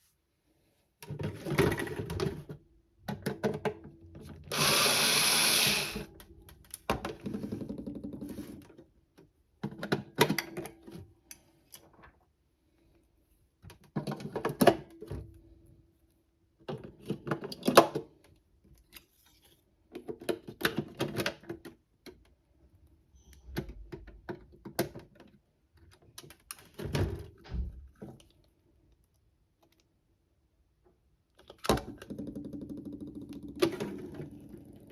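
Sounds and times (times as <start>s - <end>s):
small electric motors whirring: 4.5s - 6.1s.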